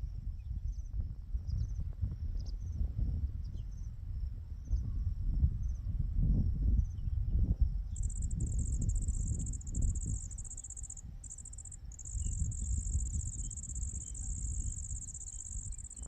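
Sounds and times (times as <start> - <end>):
cricket trilling: 7.9 - 16.0.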